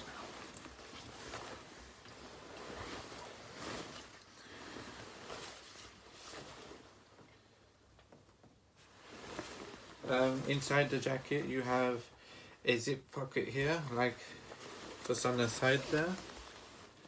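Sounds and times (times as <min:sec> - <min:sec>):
paper tags and fabric rustling: 0:13.1 - 0:17.0.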